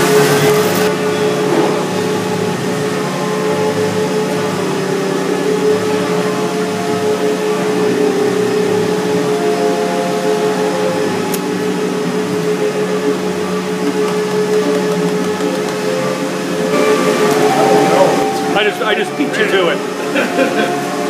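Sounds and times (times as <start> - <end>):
vacuum motor humming and whining: 0.0 - 21.0.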